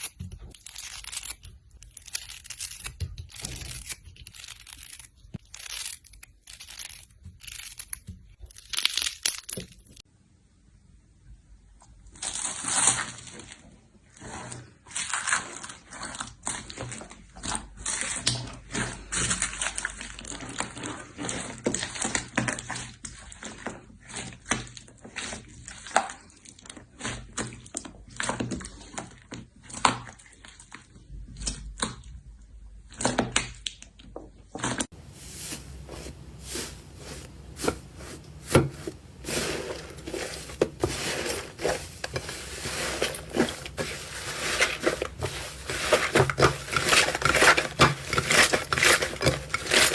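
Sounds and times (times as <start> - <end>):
slime squishing and crackling: 12.1 - 32.0, 35.0 - 49.9.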